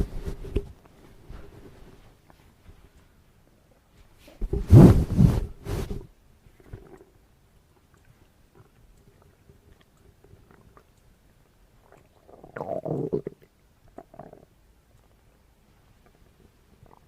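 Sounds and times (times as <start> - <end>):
stomach growling: 6.5 - 11.0, 11.8 - 14.6, 16.0 - 17.0.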